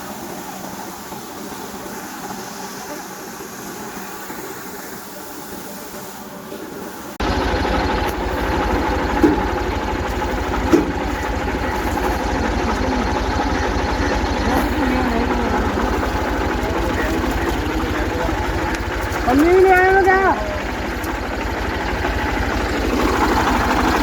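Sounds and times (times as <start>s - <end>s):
threshing machinery: 5.9s - 24.0s
tractor engine throbbing: 6.6s - 24.0s.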